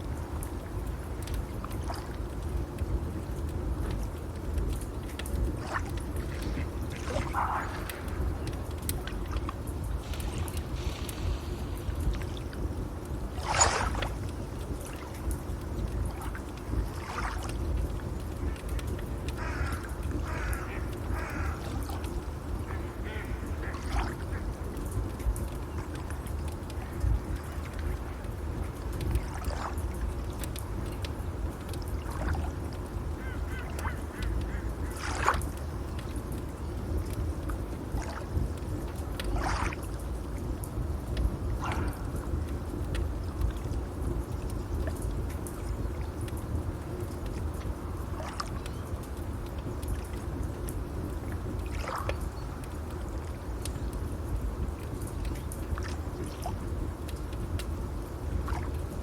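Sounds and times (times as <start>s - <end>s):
fire crackling: 0.0s - 16.9s
waves rushing: 5.6s - 15.1s.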